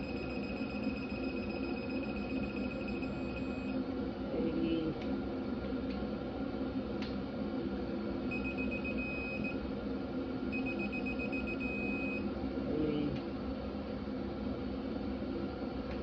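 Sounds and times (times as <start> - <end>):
torque wrench rapid high beeps: 0.0 - 3.7
steady beep tone: 0.0 - 3.8, 8.3 - 9.6, 10.5 - 12.2.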